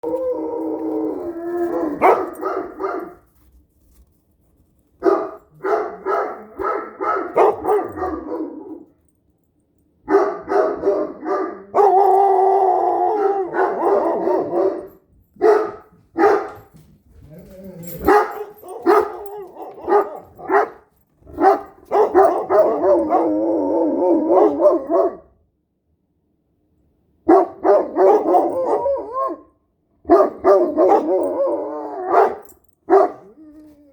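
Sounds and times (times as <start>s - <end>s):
dogs howling: 0.0s - 2.8s, 10.8s - 15.0s, 17.3s - 20.7s, 21.9s - 25.2s, 27.6s - 29.5s, 30.1s - 33.9s
dogs barking and yipping: 0.0s - 3.4s, 5.0s - 8.9s, 10.1s - 25.2s, 27.3s - 29.5s, 30.1s - 33.7s.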